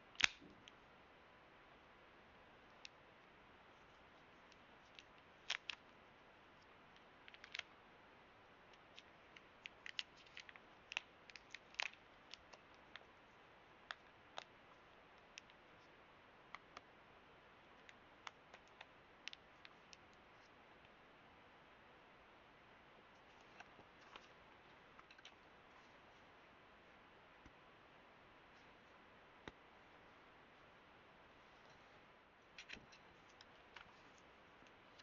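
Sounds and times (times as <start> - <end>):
faint steady hiss: 0.0 - 35.0
clicks of small items handled: 32.6 - 35.0.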